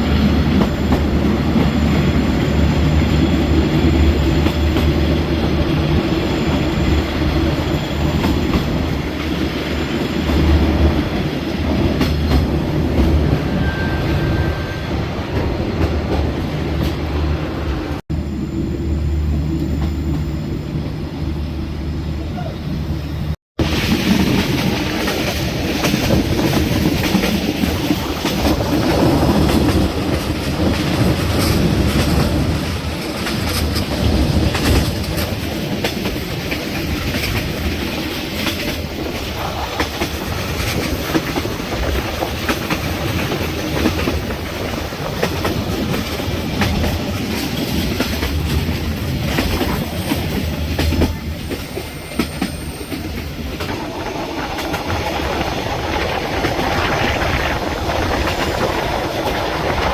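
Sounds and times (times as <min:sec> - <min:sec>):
train carriage rumbling: 0:00.0 - 0:59.9.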